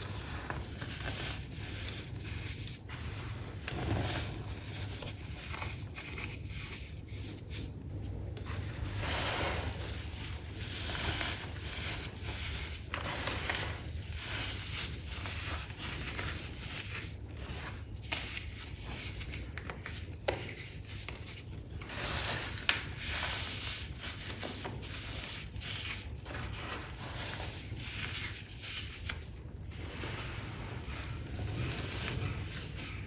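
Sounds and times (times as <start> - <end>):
hands rubbing powder: 0.0 - 7.8, 8.4 - 33.0.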